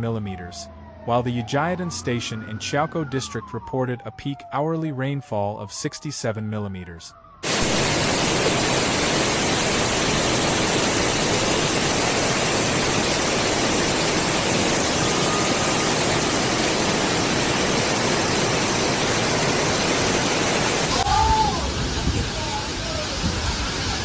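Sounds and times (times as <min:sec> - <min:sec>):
torrential rain and floodwater rushing: 0:07.4 - 0:24.0.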